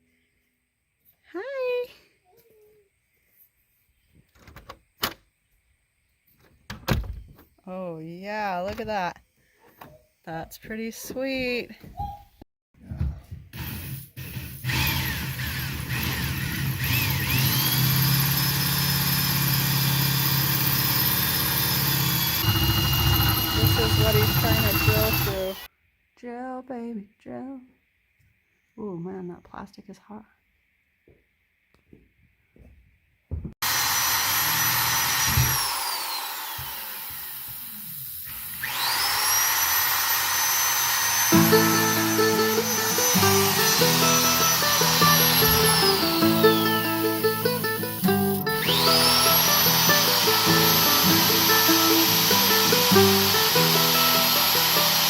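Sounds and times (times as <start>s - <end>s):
power drill drilling: 13.6s - 25.7s, 33.6s - 55.0s.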